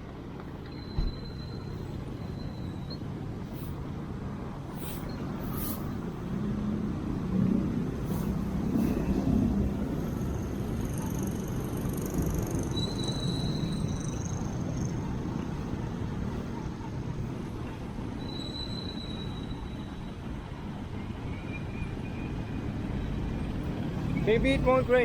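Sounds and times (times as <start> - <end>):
engine hum: 0.0 - 18.2
traffic rumble: 0.0 - 25.0.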